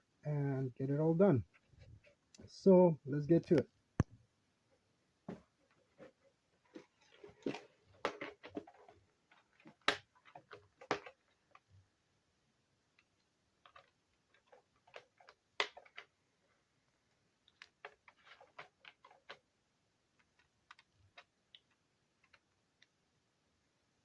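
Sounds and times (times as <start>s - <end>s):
laptop and tools clicking: 6.8s - 11.7s, 13.0s - 16.2s.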